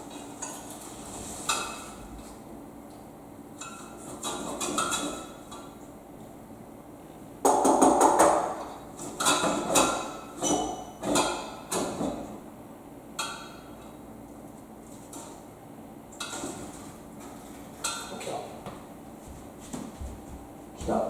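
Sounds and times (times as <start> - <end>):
hard objects knocking: 7.4 - 8.6.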